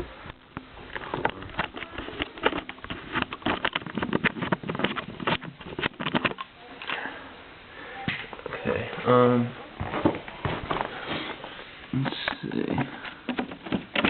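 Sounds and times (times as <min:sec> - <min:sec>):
plastic printer parts rattling: 0:01.0 - 0:06.5, 0:12.1 - 0:14.0.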